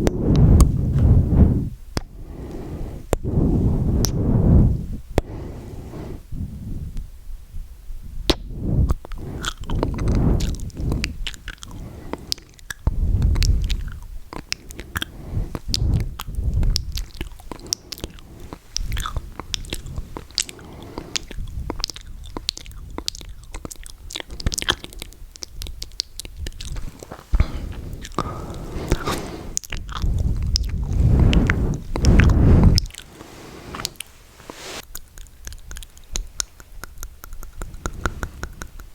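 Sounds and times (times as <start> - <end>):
mouth clicks and pops: 0.0 - 5.4, 8.2 - 38.9
breathing: 0.1 - 7.1, 8.5 - 21.8, 26.6 - 34.8, 37.6 - 38.9.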